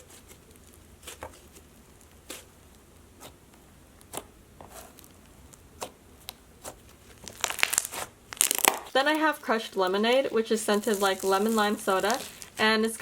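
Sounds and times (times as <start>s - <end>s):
slime clicking and popping: 7.2s - 9.0s, 10.7s - 12.6s.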